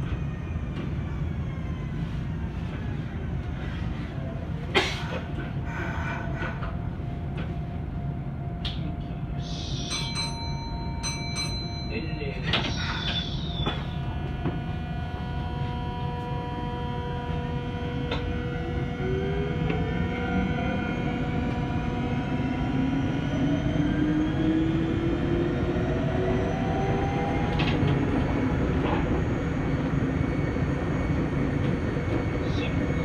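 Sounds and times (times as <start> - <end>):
wheels rumbling on rails: 6.2 - 33.0
traction motors whining: 12.4 - 14.6.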